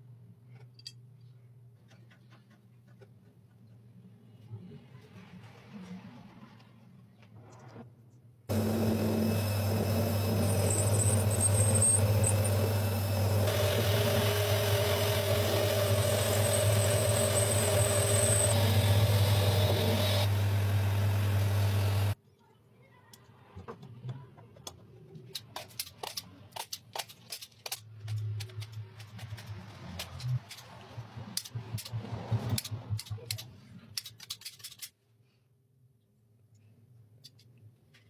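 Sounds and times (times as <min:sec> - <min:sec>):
power tool motor humming: 0:08.5 - 0:22.2.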